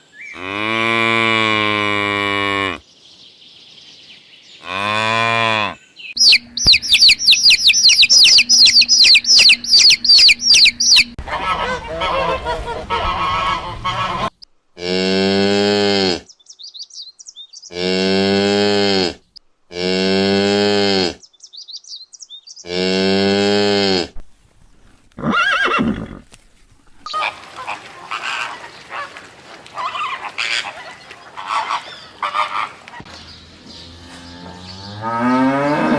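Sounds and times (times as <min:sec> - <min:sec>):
cattle mooing: 0:04.6 - 0:05.8, 0:17.7 - 0:21.2, 0:22.6 - 0:24.1, 0:33.9 - 0:35.9
rapid high-pitched animal calls: 0:06.2 - 0:11.2
geese honking: 0:06.2 - 0:14.4, 0:27.1 - 0:33.1.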